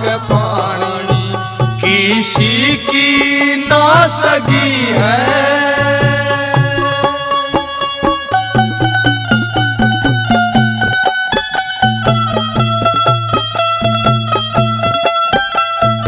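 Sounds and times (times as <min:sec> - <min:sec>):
fast drum beat: 0:00.0 - 0:15.7
melody of long held notes: 0:04.9 - 0:14.1.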